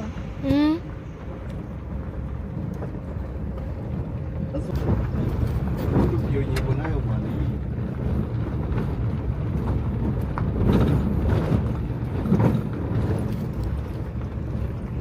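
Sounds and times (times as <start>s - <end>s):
motor vehicle rumble: 0.0s - 15.0s.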